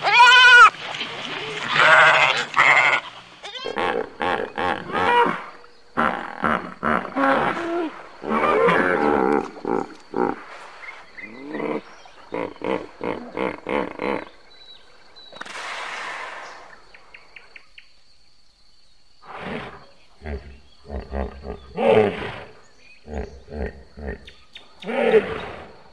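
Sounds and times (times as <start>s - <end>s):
lion roaring and grunting: 3.7s - 10.5s, 19.2s - 25.8s.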